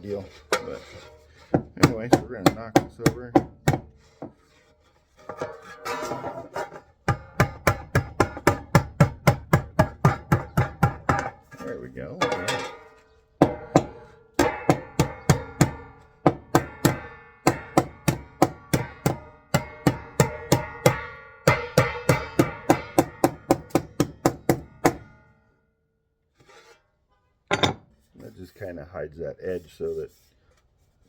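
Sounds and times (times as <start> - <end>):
hammer beating on tin sheet: 1.5 - 4.4, 7.0 - 11.5, 12.2 - 25.4.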